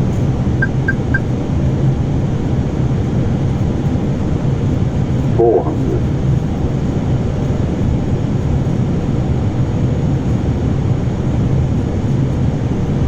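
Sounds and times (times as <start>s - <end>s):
aircraft engine drone: 0.0s - 3.0s, 3.7s - 7.0s.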